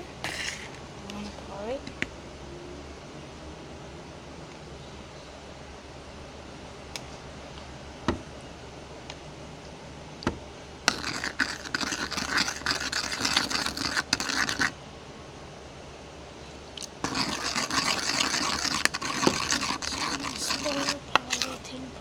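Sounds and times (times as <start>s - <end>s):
spoon stirring in a bowl: 10.9s - 14.8s, 16.8s - 21.7s.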